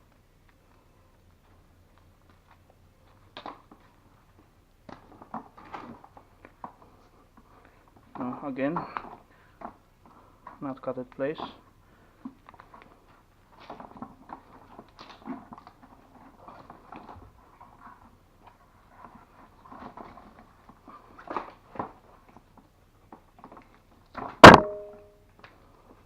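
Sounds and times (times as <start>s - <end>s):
cable clicks and rustles: 0.0s - 26.0s
loud metallic clank: 24.4s - 25.1s.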